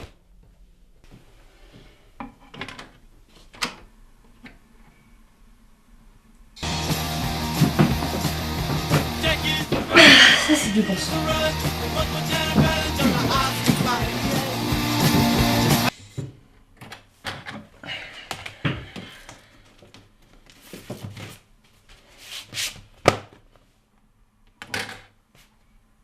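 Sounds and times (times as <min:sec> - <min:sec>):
loud band music: 0:06.6 - 0:15.9.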